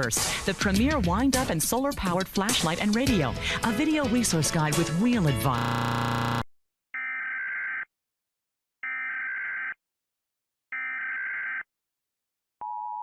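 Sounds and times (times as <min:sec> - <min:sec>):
buzzing digital data tones: 0:05.6 - 0:06.4.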